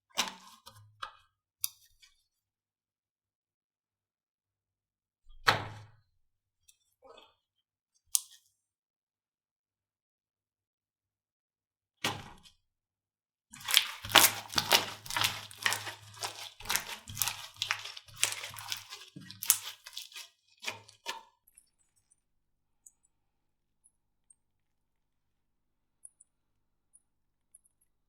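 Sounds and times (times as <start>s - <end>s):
slime squeezed by hand crackling: 13.6s - 21.0s.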